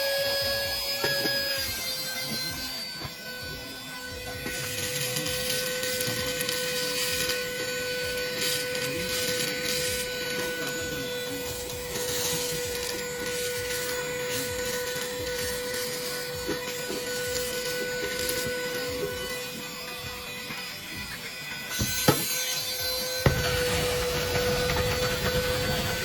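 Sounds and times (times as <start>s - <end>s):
vacuum cleaner whining: 0.0s - 26.0s.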